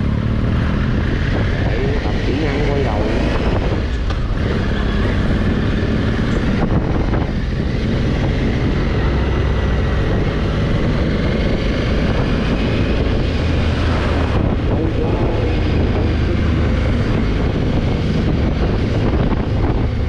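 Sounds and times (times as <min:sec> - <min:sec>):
road and wind noise: 0:00.0 - 0:20.0.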